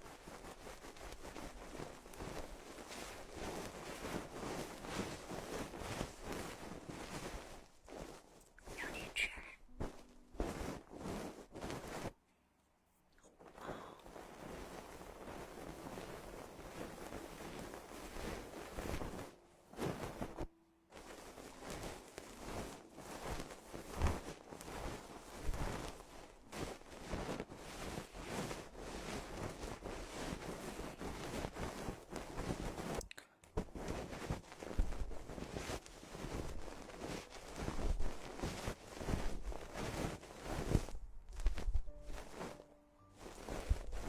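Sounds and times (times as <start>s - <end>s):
close crackling and rubbing: 0.0s - 12.2s, 13.2s - 44.0s.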